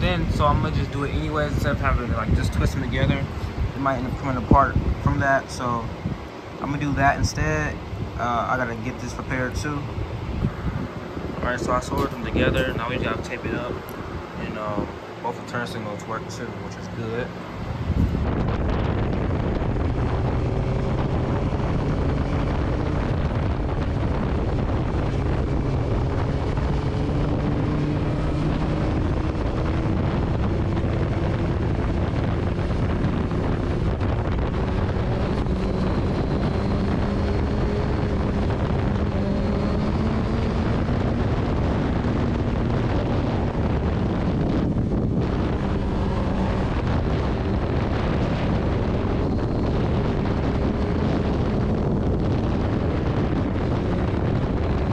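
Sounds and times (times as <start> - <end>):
wind noise on microphone: 0.0 - 54.9
motorcycle engine: 17.5 - 54.9.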